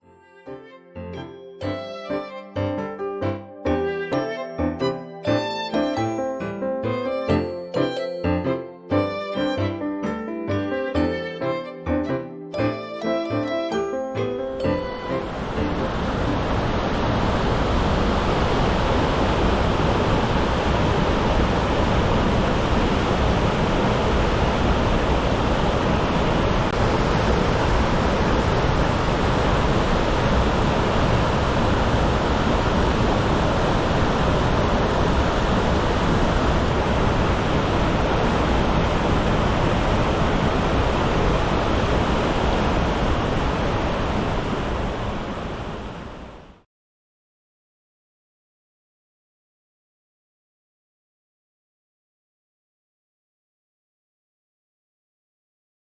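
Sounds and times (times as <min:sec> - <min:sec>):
waterfall rushing: 0:14.2 - 0:46.4.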